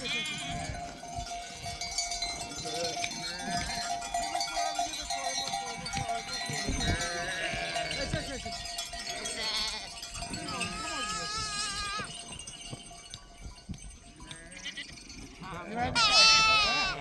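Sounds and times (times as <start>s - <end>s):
sheep bleating: 0.0s - 1.0s, 3.0s - 4.0s, 6.8s - 8.4s, 9.0s - 12.2s, 14.3s - 15.0s, 15.8s - 17.0s
livestock bell ringing: 0.0s - 17.0s.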